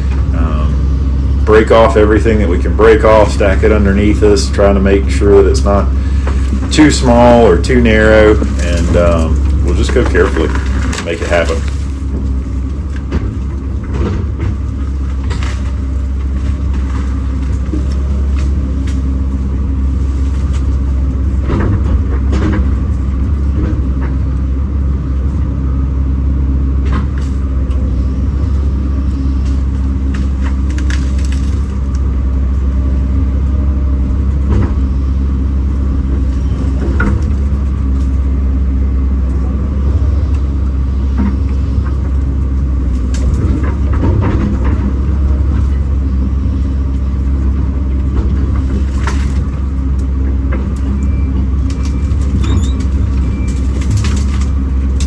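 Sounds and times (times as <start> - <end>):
excavator diesel engine running: 0.0 - 55.0
machine knocks and cracks: 7.9 - 19.6, 50.5 - 55.0.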